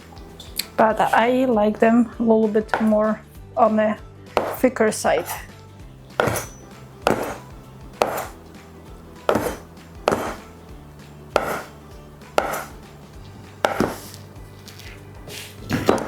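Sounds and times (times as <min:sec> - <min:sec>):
knife chopping dough: 0:04.4 - 0:05.5, 0:06.1 - 0:08.4, 0:09.2 - 0:10.5, 0:11.3 - 0:12.8, 0:13.6 - 0:14.3, 0:15.3 - 0:16.0.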